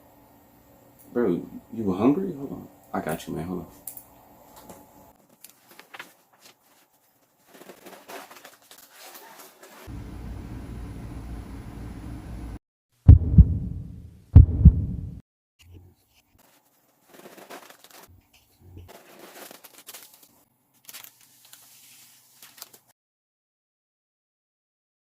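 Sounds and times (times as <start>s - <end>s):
heavy double thumps: 13.1s - 15.2s.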